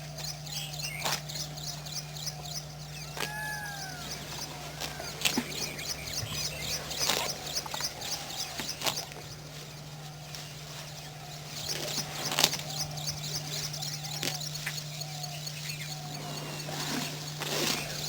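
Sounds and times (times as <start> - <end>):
bird chirping: 1.7 - 8.7.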